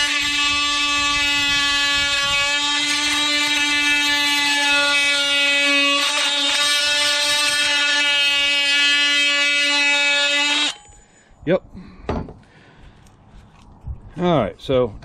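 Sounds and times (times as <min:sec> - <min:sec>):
blade rasping through plastic pipe: 0:00.0 - 0:10.8
oscillating multi-tool buzzing: 0:00.0 - 0:11.1.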